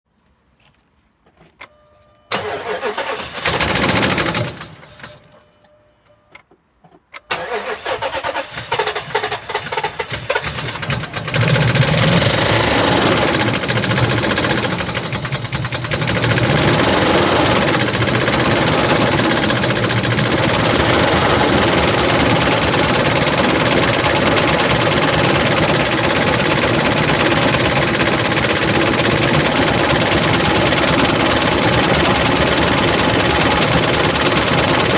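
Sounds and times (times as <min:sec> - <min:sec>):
engine cranking and starting: 0:02.3 - 0:05.4, 0:07.2 - 0:34.9
engine idling: 0:07.4 - 0:34.9.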